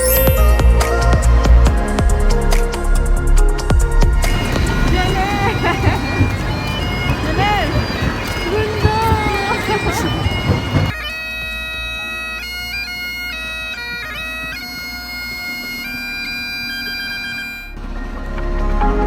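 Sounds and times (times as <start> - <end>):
bagpipes playing slow melody: 4.3 - 17.9.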